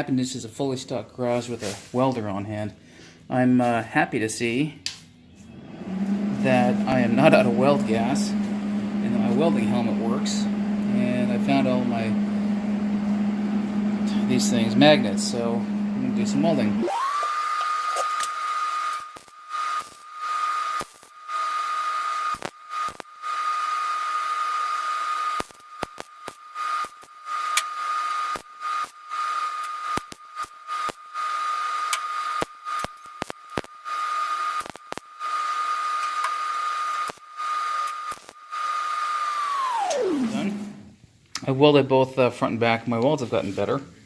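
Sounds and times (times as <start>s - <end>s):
welding arc crackling: 18.9s - 21.5s, 22.2s - 23.2s, 25.3s - 36.1s, 36.9s - 38.4s, 40.0s - 40.7s
high-pitched whine: 39.4s - 40.9s.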